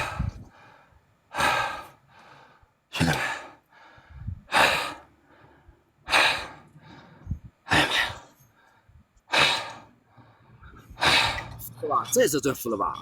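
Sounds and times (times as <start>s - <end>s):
man panting heavily: 0.0s - 11.7s
man speaking: 11.5s - 13.0s.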